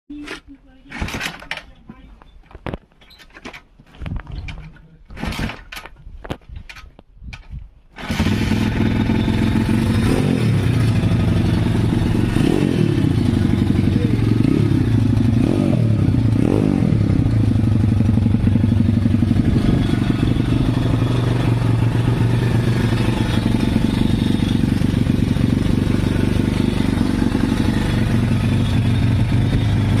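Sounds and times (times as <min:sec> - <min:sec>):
engine revving: 0:08.0 - 0:30.0
vehicle engine starting and idling: 0:08.0 - 0:30.0.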